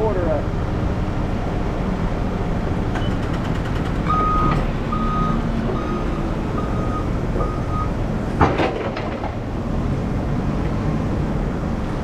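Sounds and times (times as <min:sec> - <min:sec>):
engine rumbling: 0:00.0 - 0:12.0
reversing alarm beeps: 0:04.1 - 0:07.9.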